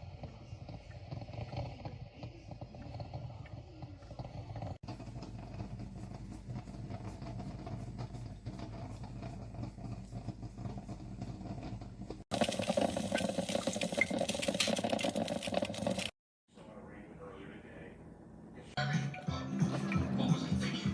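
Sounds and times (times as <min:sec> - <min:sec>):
coffee maker gurgling and hissing: 0:00.0 - 0:16.2.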